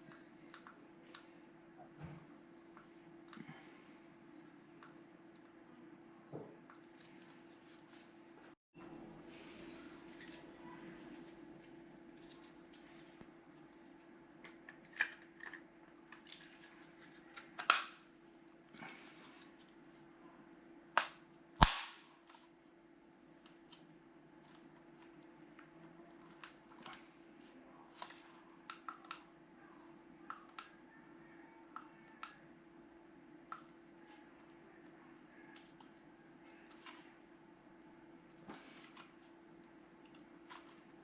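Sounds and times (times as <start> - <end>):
faint steady hum: 0.0 - 41.0
sharp loud snaps: 21.0 - 22.1.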